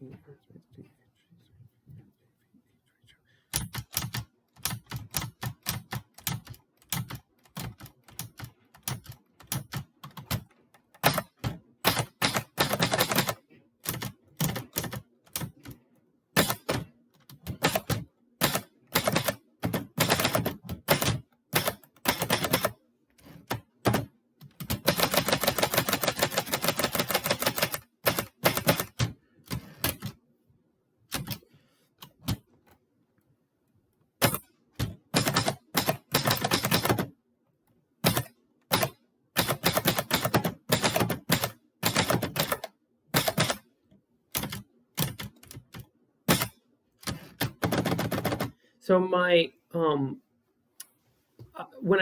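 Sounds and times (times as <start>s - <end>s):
typewriter key strikes: 16.4s - 16.9s, 34.2s - 37.1s, 38.0s - 43.6s, 44.4s - 48.5s.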